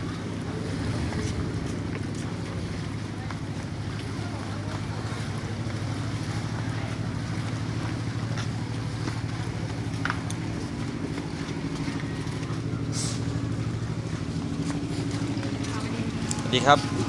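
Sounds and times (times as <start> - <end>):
boat engine running: 0.0 - 17.0.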